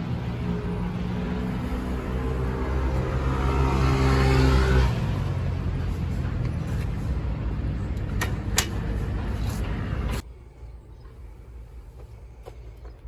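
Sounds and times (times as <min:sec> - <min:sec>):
car engine accelerating: 0:00.0 - 0:06.5.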